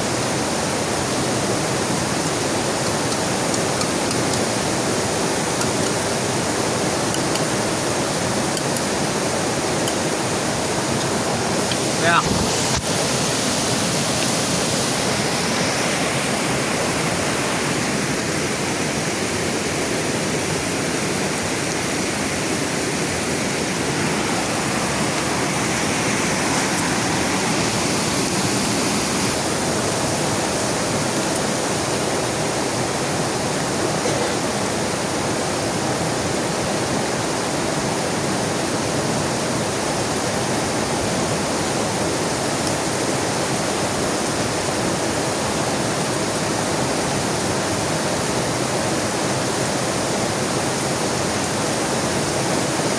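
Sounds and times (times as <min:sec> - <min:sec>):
heavy rain pouring: 0:00.0 - 0:52.9
river flowing: 0:00.0 - 0:52.9.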